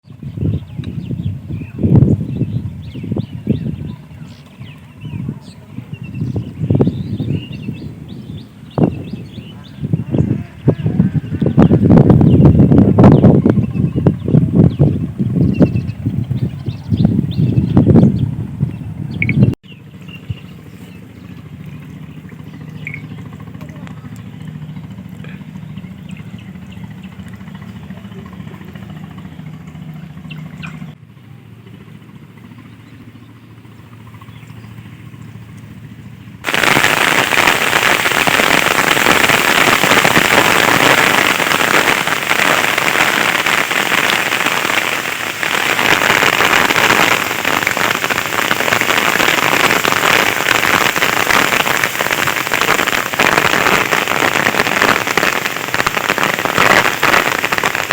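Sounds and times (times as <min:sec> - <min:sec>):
heavy rain pouring: 0:36.4 - 0:57.9.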